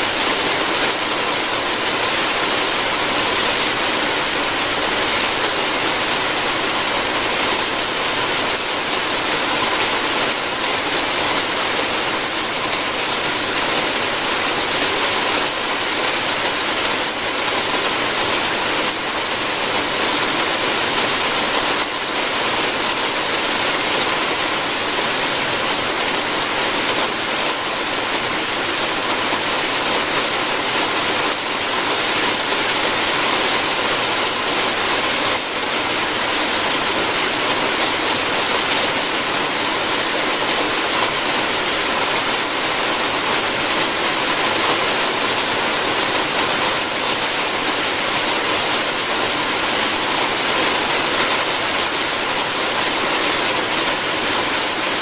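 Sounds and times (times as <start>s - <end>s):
rain falling on a roof: 0.0s - 55.0s.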